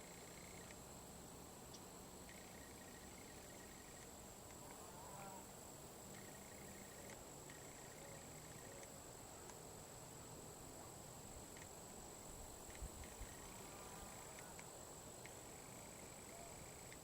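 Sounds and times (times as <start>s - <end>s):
high-pitched insect drone: 0.0s - 0.8s, 2.2s - 9.3s, 11.4s - 17.0s.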